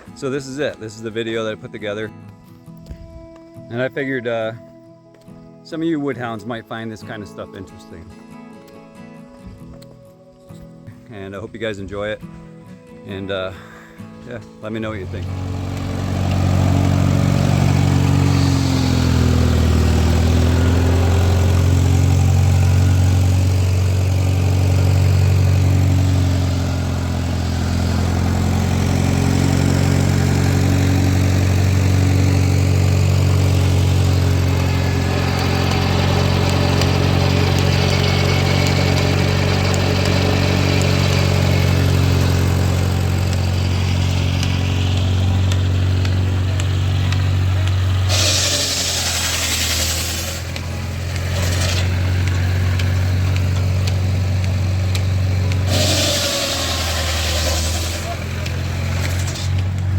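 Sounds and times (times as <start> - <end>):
engine running steadily: 13.6 - 59.9.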